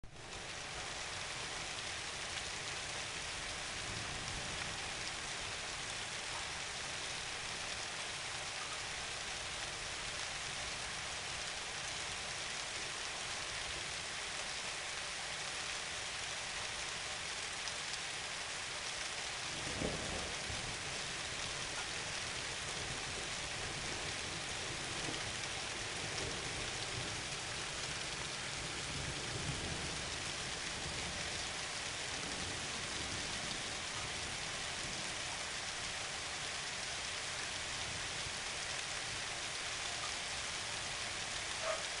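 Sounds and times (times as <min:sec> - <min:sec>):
steady rain: 0:00.0 - 0:42.0
faint thunder rumbles: 0:19.3 - 0:39.4, 0:40.3 - 0:42.0.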